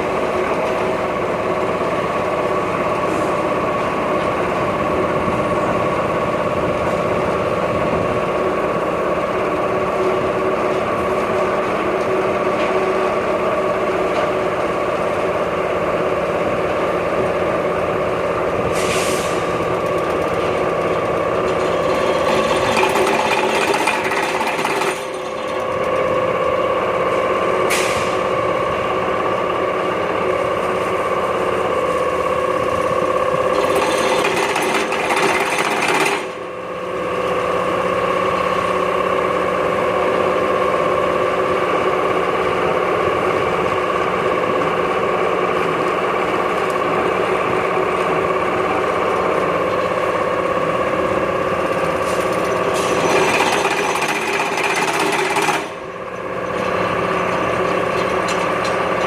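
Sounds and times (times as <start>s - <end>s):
machine whine: 30.3s - 45.7s
pile driver hammering: 53.0s - 55.9s.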